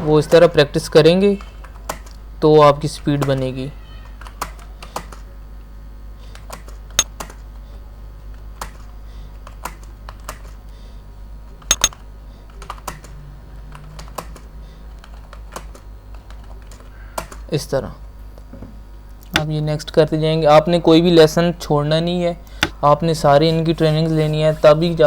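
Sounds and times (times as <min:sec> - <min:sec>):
low steady hum: 0:11.7 - 0:12.0.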